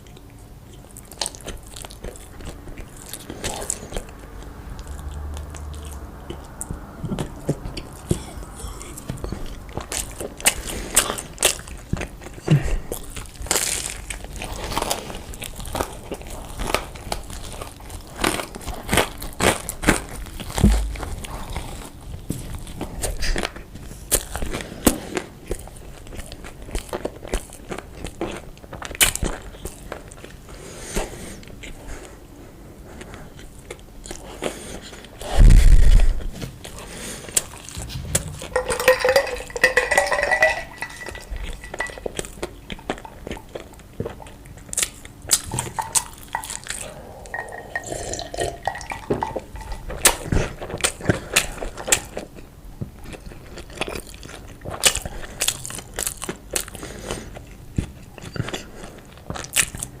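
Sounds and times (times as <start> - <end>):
chewing and crunching: 0.0 - 60.0
heavy low thump: 20.6 - 21.5, 37.8 - 38.9.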